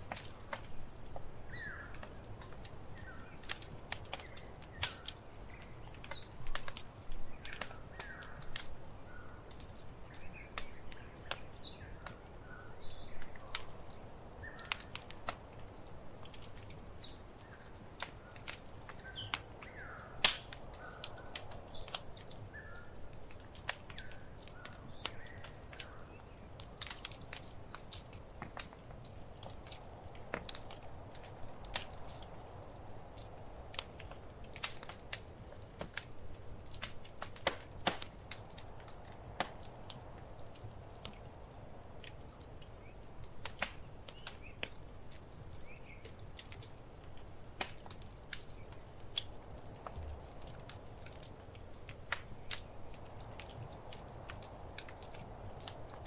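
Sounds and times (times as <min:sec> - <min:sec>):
hiss and rumble of flames: 0:00.0 - 0:56.0
wood fire pops and snaps: 0:00.0 - 0:56.0.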